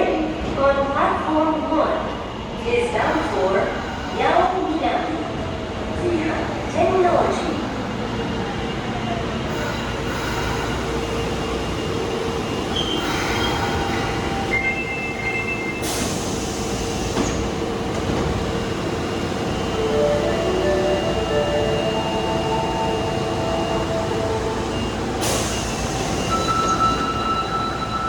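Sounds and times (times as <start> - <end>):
subway train rumble: 0.0 - 28.0
train wheels and brakes squealing: 8.2 - 17.6, 20.9 - 28.0.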